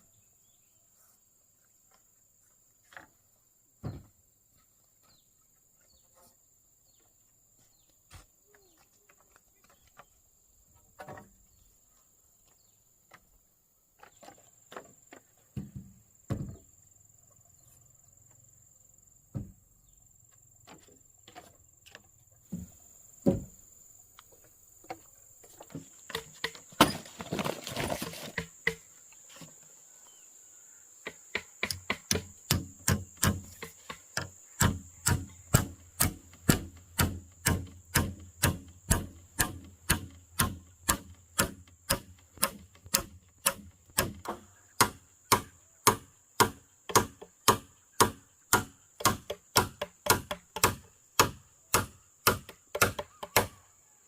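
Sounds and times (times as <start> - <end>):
scraping and rustling: 25.4 - 28.6
hand tool striking wood: 25.7 - 28.9, 31.0 - 53.6.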